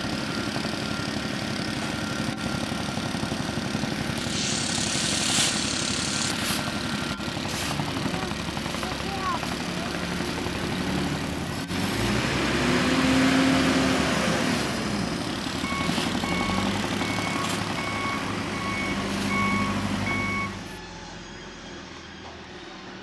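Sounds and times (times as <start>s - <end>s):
diesel engine revving: 0.0s - 20.8s
reversing alarm beeping: 0.2s - 10.2s, 14.8s - 23.0s.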